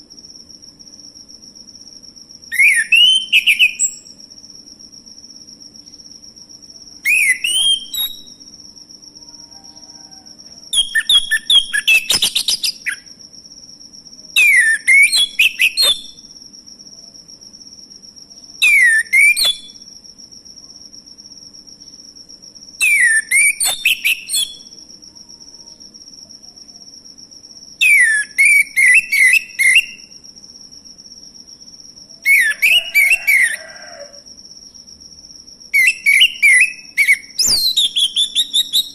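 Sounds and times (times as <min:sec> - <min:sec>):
thrush singing whistled phrases: 0:02.5 - 0:04.1, 0:07.1 - 0:08.3, 0:14.4 - 0:16.2, 0:22.8 - 0:24.6, 0:35.8 - 0:38.9.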